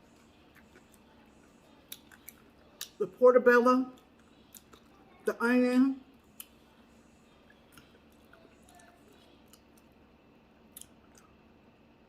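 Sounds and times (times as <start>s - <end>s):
chewing mouth sounds: 0.0s - 3.0s, 4.0s - 5.0s, 10.7s - 11.4s.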